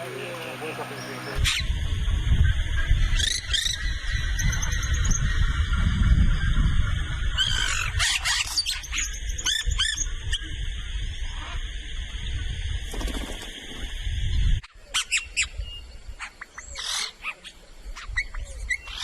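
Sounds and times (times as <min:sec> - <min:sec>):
steady low rumble: 0:00.0 - 0:14.7
birds calling in a colony: 0:00.0 - 0:19.0.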